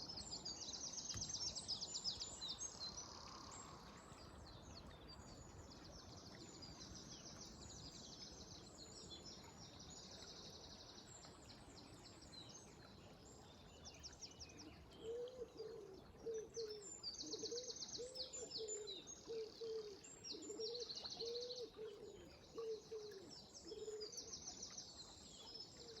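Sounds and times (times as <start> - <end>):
flowing water: 0.0 - 26.0
songbirds chirping and trilling: 0.0 - 26.0.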